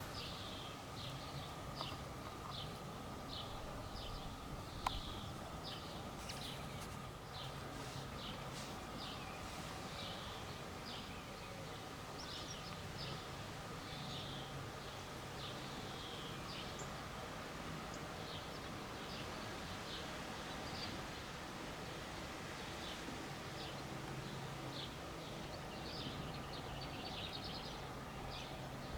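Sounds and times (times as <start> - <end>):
birds chirping: 0.0 - 13.3, 23.6 - 28.9
low background hum: 0.0 - 28.9.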